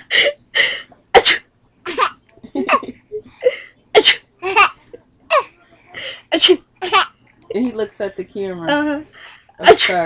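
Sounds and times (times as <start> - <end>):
baby laughing: 1.9 - 3.0, 4.4 - 5.5, 6.8 - 7.2.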